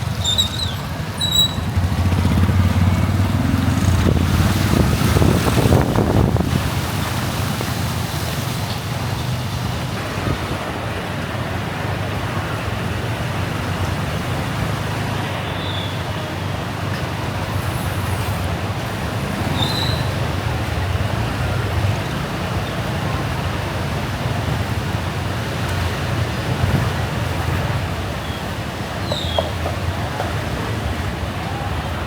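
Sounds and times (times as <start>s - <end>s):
rain and wet-road hiss: 0.0s - 32.0s
traffic rumble: 0.0s - 32.0s.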